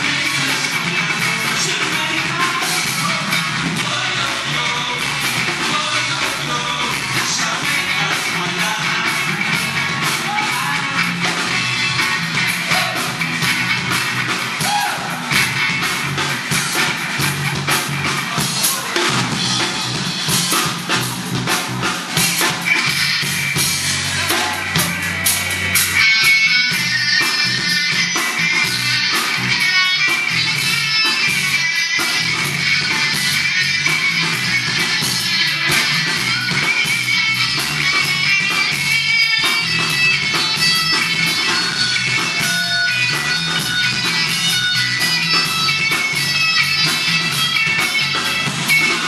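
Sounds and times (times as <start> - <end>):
person singing: 0.0 - 11.4
drum kit beat: 0.0 - 49.0
guitar: 0.0 - 49.0
live rock band playing: 0.0 - 49.0.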